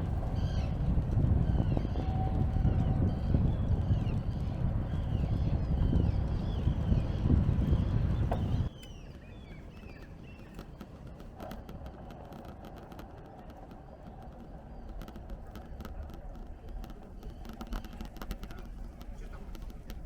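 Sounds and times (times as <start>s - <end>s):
low steady rumble: 0.0s - 20.0s
birds chirping: 0.2s - 20.0s
faint ticks: 9.6s - 20.0s.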